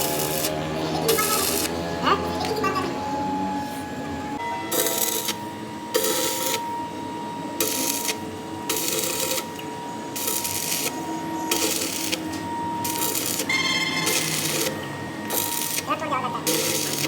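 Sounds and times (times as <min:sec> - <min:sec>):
hissing cutting noise: 0:00.0 - 0:05.4
metal lathe whine: 0:00.0 - 0:17.0.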